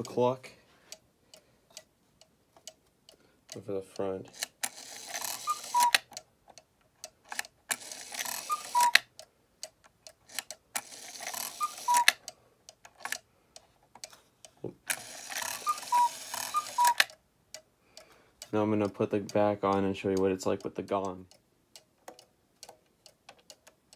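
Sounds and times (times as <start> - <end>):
clock movement clicks: 0.0 - 23.9
cuckoo clock calling: 3.5 - 6.3, 7.3 - 9.3, 10.1 - 13.2, 14.5 - 17.2.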